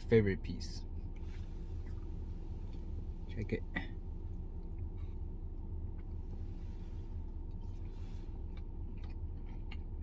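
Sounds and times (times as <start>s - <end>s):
low background hum: 0.0s - 10.0s
mouth chewing sounds: 7.4s - 10.0s.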